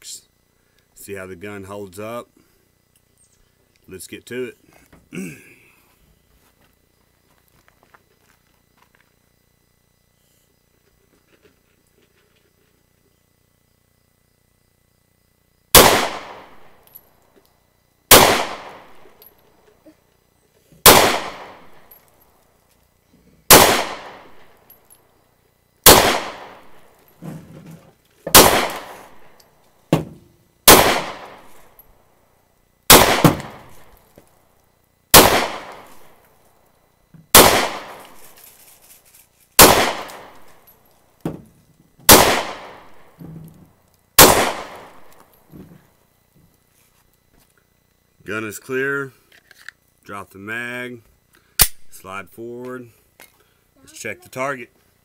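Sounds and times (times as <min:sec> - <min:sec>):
pistol shots echoing: 0:15.8 - 0:16.8, 0:18.1 - 0:19.2, 0:20.8 - 0:21.9, 0:23.5 - 0:24.6, 0:25.8 - 0:27.0, 0:28.3 - 0:29.4, 0:30.7 - 0:31.7, 0:32.9 - 0:33.9, 0:35.1 - 0:36.2, 0:37.3 - 0:38.2, 0:39.6 - 0:40.5, 0:42.1 - 0:43.1, 0:44.2 - 0:45.2.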